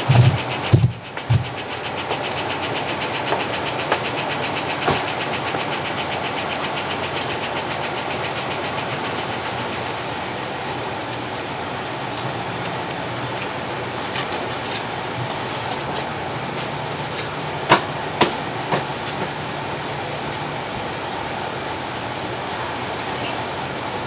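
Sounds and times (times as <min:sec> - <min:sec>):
fast rhythmic ticking: 0:00.0 - 0:11.0
vehicle engine running: 0:00.0 - 0:24.0.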